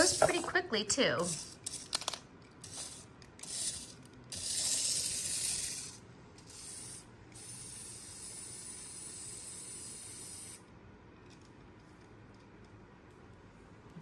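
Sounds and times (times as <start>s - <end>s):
toy motors and gears whirring: 0.0s - 10.8s.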